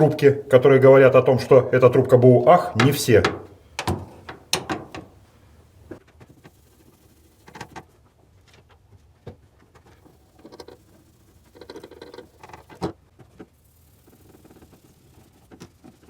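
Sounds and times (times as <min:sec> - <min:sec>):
scratchy rubbing on metal pipe: 0:02.0 - 0:07.9, 0:10.0 - 0:12.9, 0:13.6 - 0:16.0.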